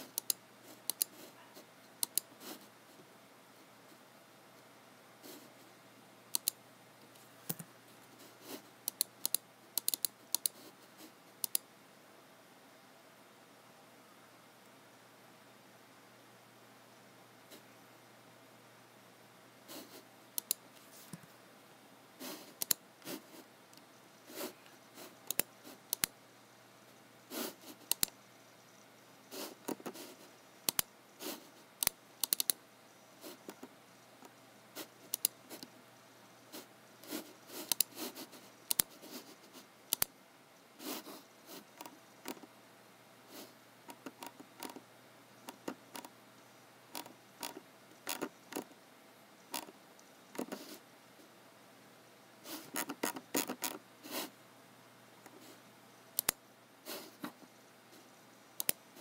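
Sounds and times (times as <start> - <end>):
mouse and keyboard clicks: 0.1 - 1.2, 2.0 - 2.3, 6.3 - 6.6, 7.4 - 7.7, 8.8 - 10.6, 11.4 - 11.7, 20.4 - 21.3, 22.5 - 22.8, 24.6 - 26.2, 27.8 - 28.2, 30.6 - 30.9, 31.8 - 32.6, 35.1 - 35.7, 37.6 - 38.0, 38.7 - 39.0, 39.9 - 40.1, 41.8 - 42.5, 43.9 - 44.8, 45.4 - 46.1, 46.9 - 48.8, 49.5 - 50.7, 52.6 - 53.8, 56.2 - 56.4, 58.6 - 58.8
mouse scraping: 43.3 - 44.8, 45.4 - 46.1, 46.9 - 48.8, 49.5 - 49.8, 52.4 - 54.3.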